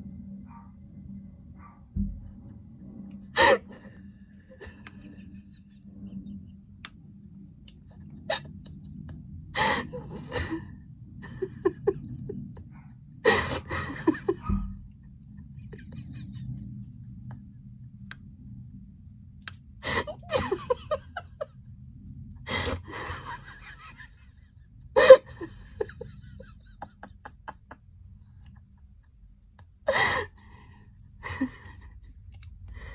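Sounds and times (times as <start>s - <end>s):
low steady hum: 0.0s - 32.9s
people laughing and gasping: 3.4s - 5.8s, 9.6s - 12.7s, 13.3s - 14.7s, 19.8s - 21.5s, 22.5s - 24.1s.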